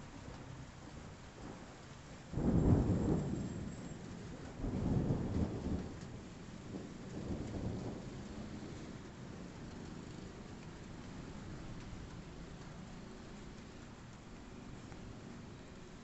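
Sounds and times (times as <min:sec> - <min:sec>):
steady rain: 0:00.0 - 0:16.0
thunder rumbling: 0:02.3 - 0:13.9.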